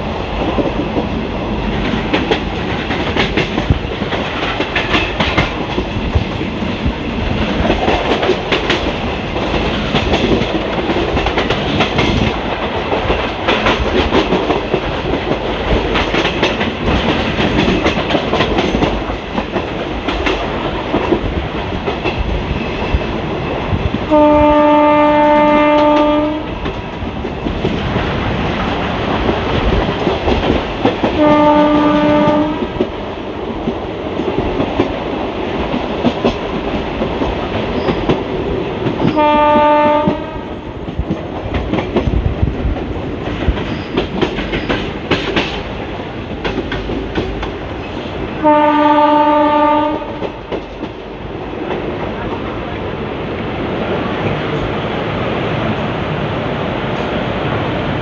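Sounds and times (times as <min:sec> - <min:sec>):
train wheels clattering over rail joints: 0:00.3 - 0:24.3, 0:25.2 - 0:48.7, 0:49.3 - 0:52.5
train horn blasts: 0:24.1 - 0:26.5, 0:31.2 - 0:32.7, 0:39.2 - 0:40.6, 0:48.4 - 0:50.4.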